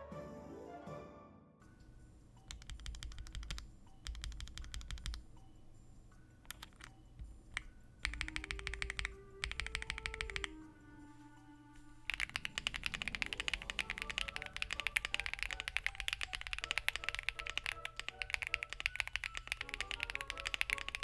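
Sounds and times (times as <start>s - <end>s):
mechanical keyboard typing: 1.8s - 11.0s, 11.8s - 21.0s.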